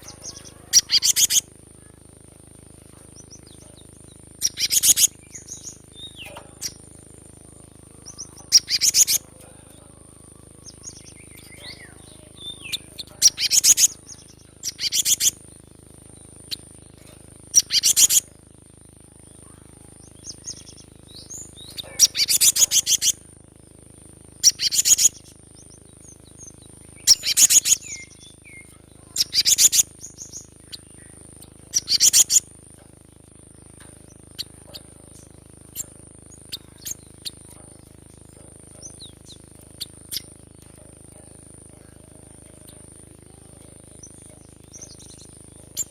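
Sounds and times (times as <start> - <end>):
bird chattering calls: 0.0 - 2.1, 3.1 - 18.4, 19.3 - 23.4, 24.3 - 45.9
faint ticks: 33.7 - 45.9.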